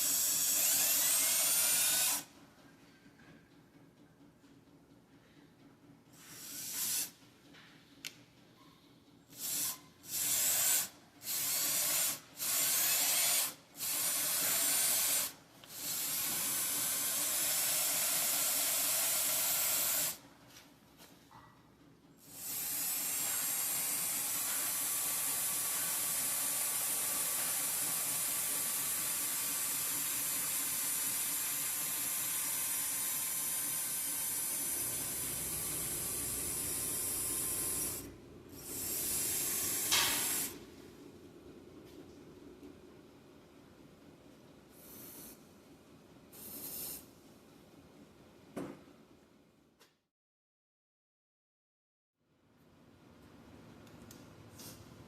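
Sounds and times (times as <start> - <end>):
electric drill boring into metal: 0.0 - 2.3, 9.5 - 20.2, 22.4 - 40.6.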